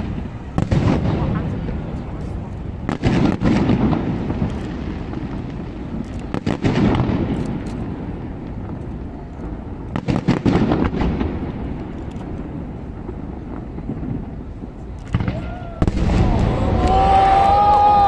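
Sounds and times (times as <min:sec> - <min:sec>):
fireworks banging: 0:00.0 - 0:18.0
rumbling echo: 0:15.2 - 0:18.0.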